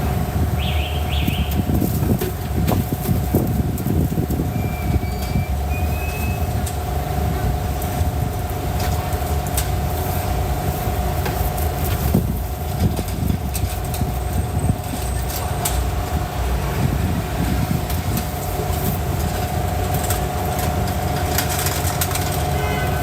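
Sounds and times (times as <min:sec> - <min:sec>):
low machine rumble: 0:00.0 - 0:23.0.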